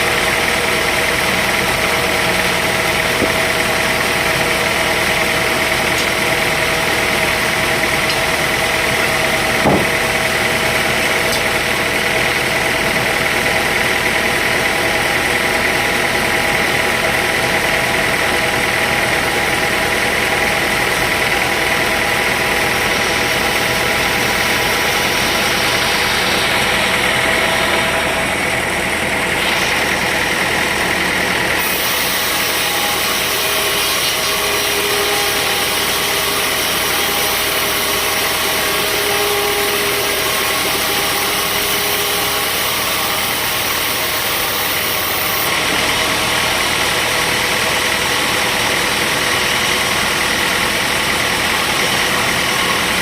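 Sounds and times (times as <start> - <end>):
engine running steadily: 0.0 - 53.0
short knock: 9.6 - 10.0.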